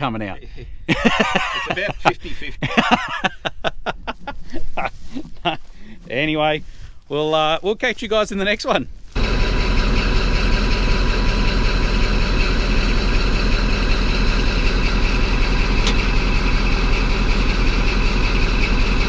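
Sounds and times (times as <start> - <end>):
bulldozer diesel engine running: 9.2 - 19.0.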